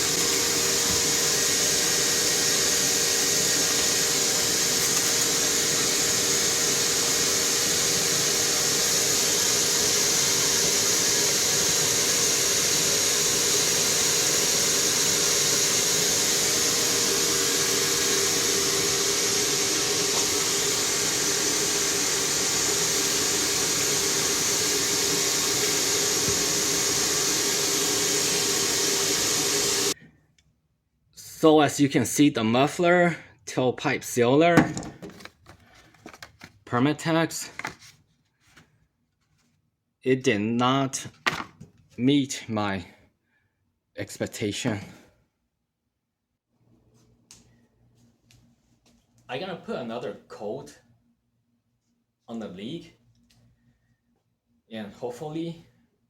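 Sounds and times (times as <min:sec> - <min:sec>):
shop vacuum running: 0:00.0 - 0:30.0.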